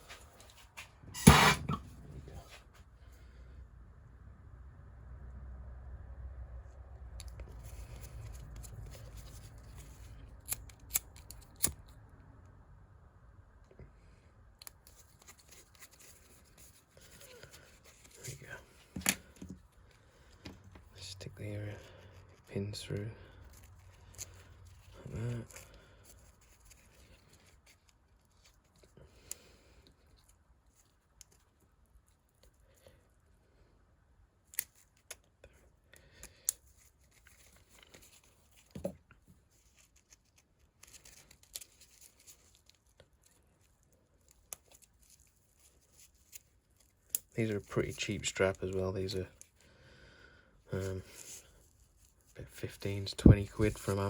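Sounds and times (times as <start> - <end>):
watch strap clicks and rustles: 7.2 - 12.0, 34.4 - 35.3, 36.4 - 47.4
nylon strap rasping and rustling: 7.3 - 11.7, 14.7 - 21.0, 21.7 - 32.6, 36.5 - 49.7, 50.7 - 54.0.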